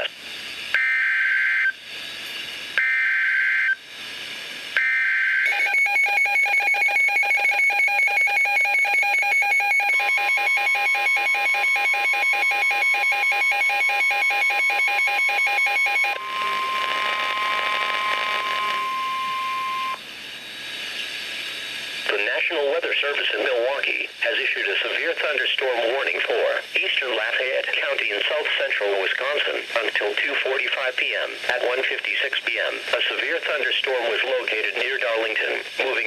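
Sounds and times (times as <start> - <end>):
radio hiss: 0.0 - 0.8, 16.2 - 36.0
steady warning alarm tone: 0.7 - 1.8, 2.8 - 3.8, 4.8 - 22.4
rapid pulsing alarm beeps: 4.8 - 20.0
screeching digital data bursts: 9.2 - 20.0.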